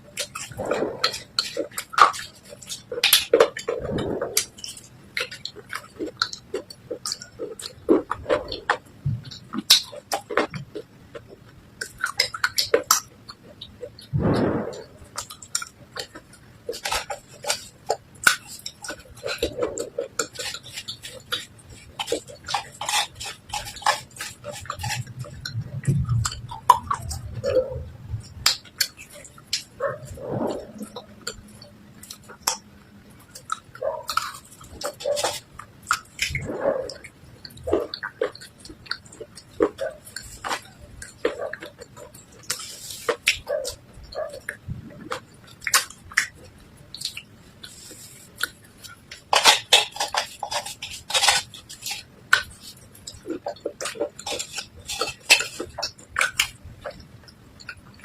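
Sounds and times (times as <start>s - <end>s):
clay and slate crunching: 14.1s - 27.7s.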